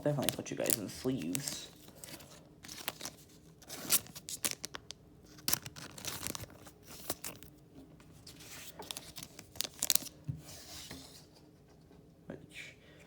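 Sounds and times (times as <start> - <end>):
plastic card sleeves crinkling: 0.0 - 7.5, 8.2 - 10.2.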